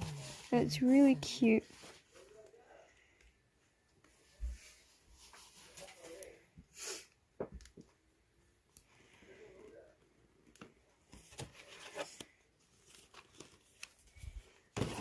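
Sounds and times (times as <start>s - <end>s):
breathy paper rustle: 11.1s - 15.0s.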